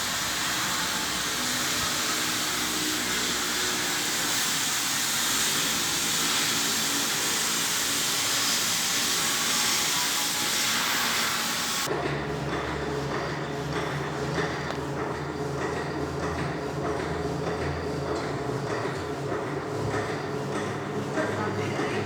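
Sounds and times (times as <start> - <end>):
steady even hiss: 0.0 - 11.9.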